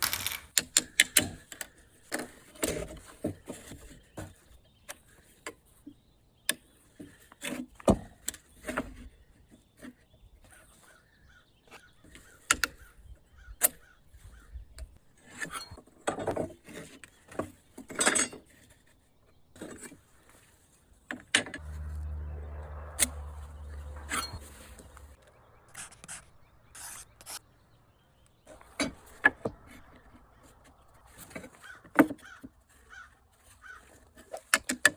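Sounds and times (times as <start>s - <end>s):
wood scraping: 21.6s - 25.2s.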